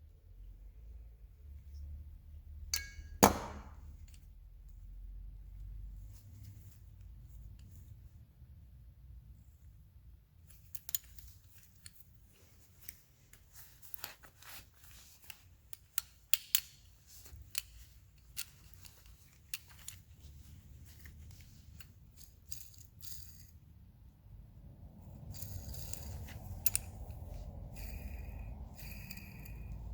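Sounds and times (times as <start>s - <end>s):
metal parts and tools clinking: 2.7s - 4.3s, 10.5s - 23.6s, 25.2s - 29.9s.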